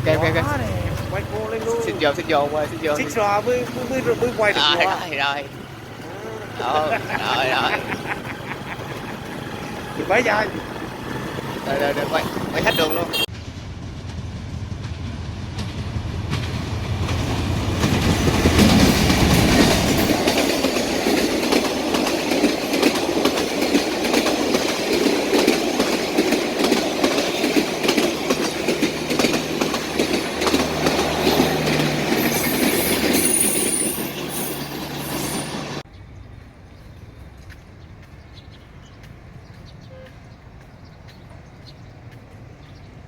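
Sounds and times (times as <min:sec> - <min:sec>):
wheels clacking over rail joints: 0:00.0 - 0:12.7, 0:13.9 - 0:35.0
locomotive engine drone: 0:00.0 - 0:38.2
wheel squeal: 0:30.9 - 0:35.8.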